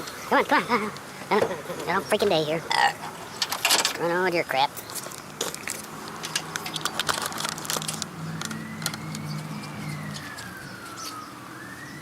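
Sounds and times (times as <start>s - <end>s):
faint police siren wailing: 7.2s - 12.0s.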